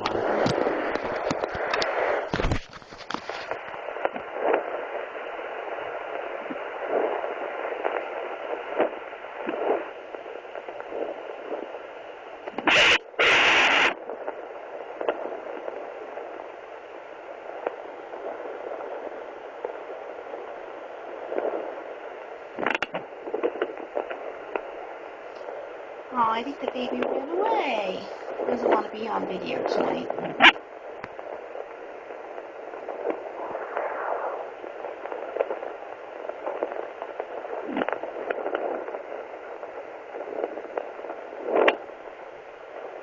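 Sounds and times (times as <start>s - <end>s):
doppler monitor static hiss: 0.0s - 43.0s
probe scraping rasps: 12.5s - 13.9s.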